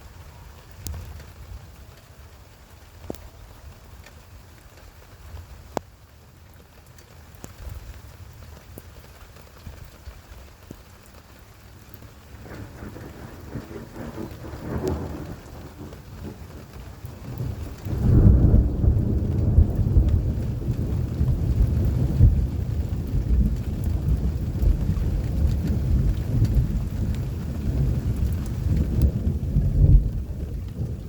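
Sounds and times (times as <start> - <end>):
rain falling steadily: 0.0 - 31.0
thunder rumbling: 12.3 - 31.0.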